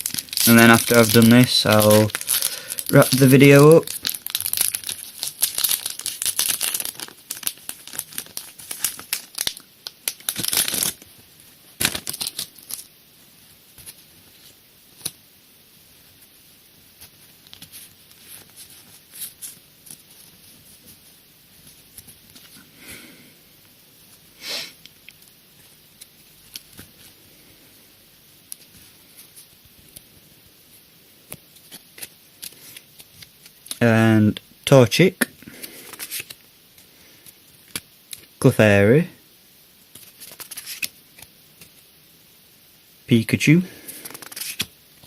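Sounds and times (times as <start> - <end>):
cards rustling and clicking: 0.0 - 11.0, 11.8 - 12.9, 31.3 - 33.8, 35.6 - 36.4, 39.9 - 41.8, 43.9 - 44.7
foil pack tearing and crinkling: 0.0 - 11.1, 11.8 - 12.9, 43.9 - 44.7.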